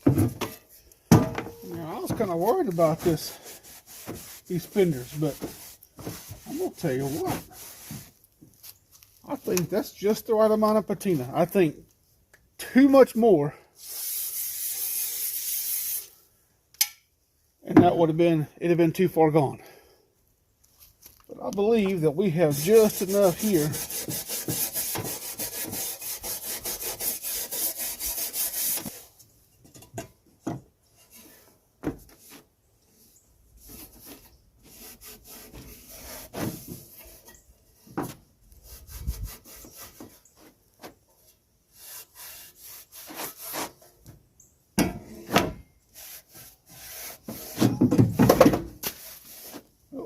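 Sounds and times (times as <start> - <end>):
wire brush scrubbing sheet metal: 1.8 - 8.1, 13.8 - 16.1, 22.2 - 29.1.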